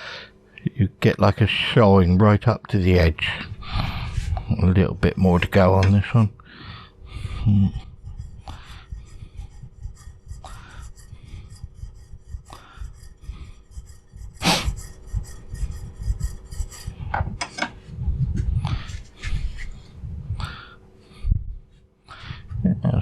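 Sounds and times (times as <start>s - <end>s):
chisel scraping on sharpening stone: 7.8s - 17.6s.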